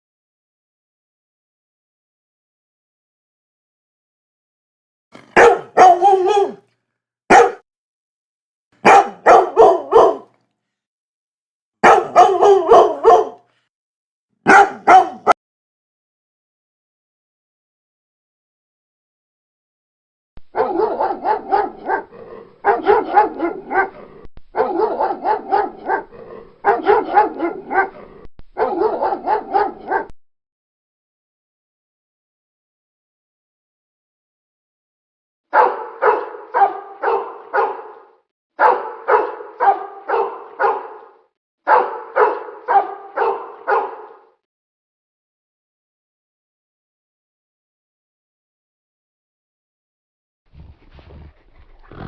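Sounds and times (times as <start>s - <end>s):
dog barking loudly: 5.2s - 6.6s, 7.3s - 7.6s, 8.8s - 10.4s, 11.8s - 13.4s, 14.4s - 15.4s, 20.5s - 30.1s, 35.5s - 44.3s.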